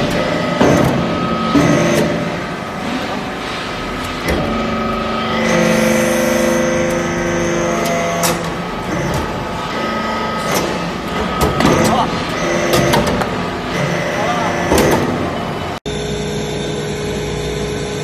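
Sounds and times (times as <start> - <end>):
baler machine hum: 0.0 - 18.0.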